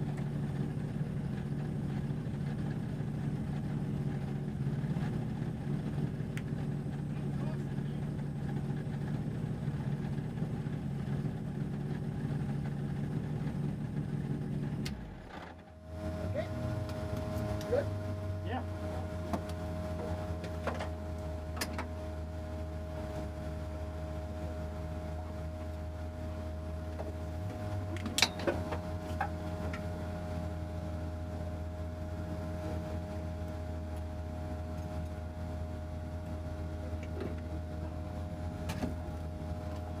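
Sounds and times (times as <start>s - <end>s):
race car engine running: 0.0s - 40.0s.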